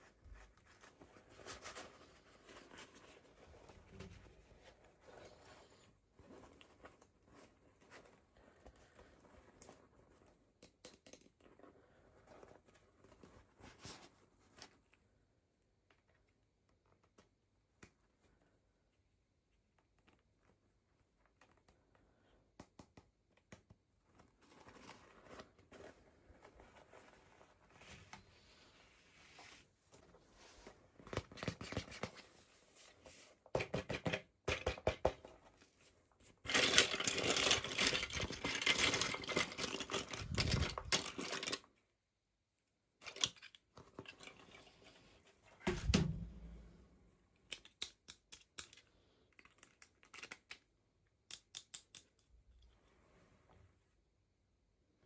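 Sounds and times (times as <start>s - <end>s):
packaging crinkling and tearing: 36.5s - 41.6s
dull thump: 45.7s - 46.6s.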